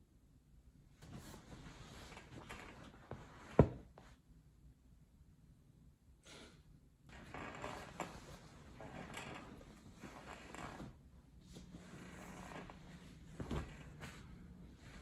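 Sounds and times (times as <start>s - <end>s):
rustling and handling noises: 7.3s - 15.0s.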